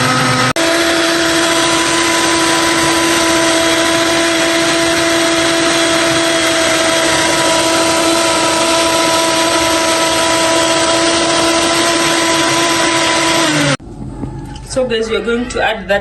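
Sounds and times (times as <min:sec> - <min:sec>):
blender motor whining: 0:00.0 - 0:13.8.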